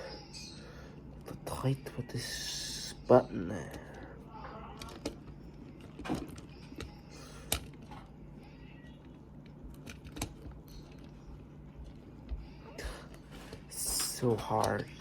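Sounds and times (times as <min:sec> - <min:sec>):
faint steady hum: 0:00.0 - 0:15.0
clicks on plastic toy parts: 0:04.8 - 0:08.0.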